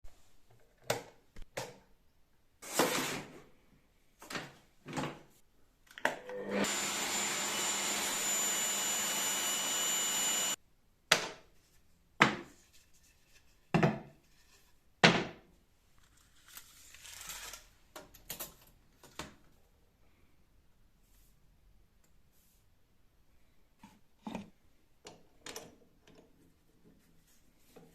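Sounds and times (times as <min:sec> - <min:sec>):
power tool whining: 0:06.2 - 0:10.6.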